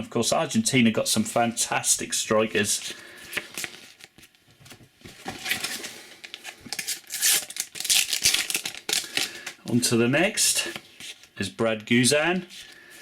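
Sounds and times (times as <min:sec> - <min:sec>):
paper stickers rustling and crinkling: 0:03.3 - 0:09.6.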